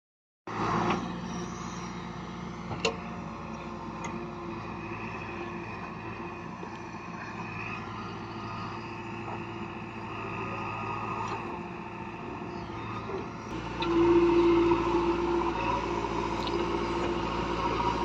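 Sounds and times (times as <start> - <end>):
diesel engine running: 0.5 - 18.0.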